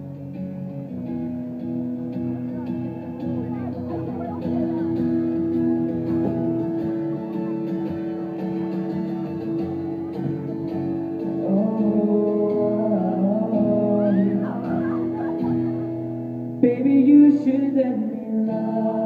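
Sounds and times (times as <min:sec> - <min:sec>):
guitar playing chords: 0:00.0 - 0:19.0
person singing: 0:11.2 - 0:16.0, 0:16.6 - 0:19.0.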